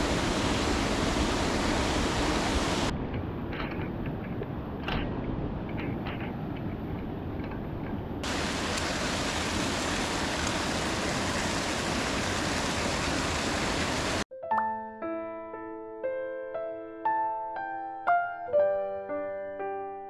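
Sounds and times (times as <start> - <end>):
stream water rushing over rocks: 0.0 - 2.9, 8.2 - 14.2
soft piano music: 14.3 - 20.0.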